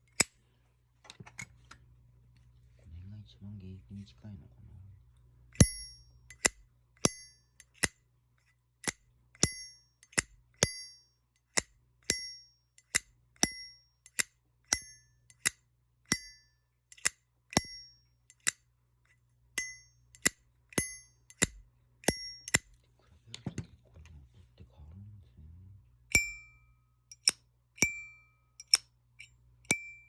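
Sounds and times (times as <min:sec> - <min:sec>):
lighter lids clicking open and shut: 0:00.0 - 0:00.3, 0:05.6 - 0:07.9, 0:11.5 - 0:16.3, 0:16.9 - 0:17.7, 0:27.1 - 0:28.0, 0:28.6 - 0:28.9.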